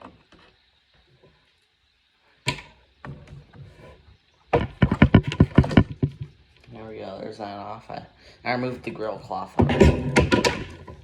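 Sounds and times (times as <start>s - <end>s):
loud knocks and rattles: 4.6s - 6.2s, 9.6s - 11.0s.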